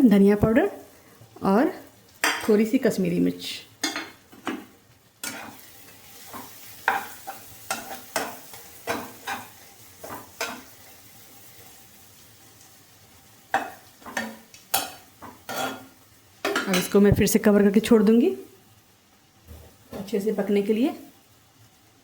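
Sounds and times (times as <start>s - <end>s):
spices sizzling in a pan: 0.0s - 22.0s
spoon scraping and knocking pan: 2.2s - 2.6s, 3.8s - 10.9s, 13.5s - 17.2s.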